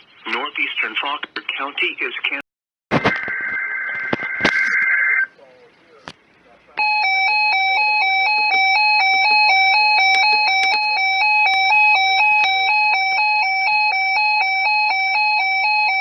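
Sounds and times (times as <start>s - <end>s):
two-pitch emergency alert tone: 6.8s - 16.0s.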